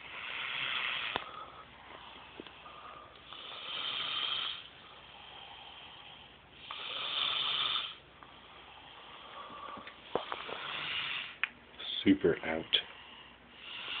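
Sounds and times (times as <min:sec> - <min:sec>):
breathy snoring: 0:00.0 - 0:11.4, 0:13.5 - 0:14.0.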